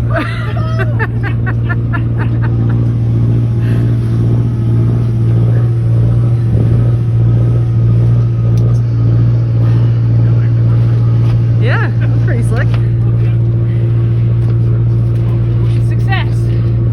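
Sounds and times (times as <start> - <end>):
boat engine humming: 0.0 - 16.9.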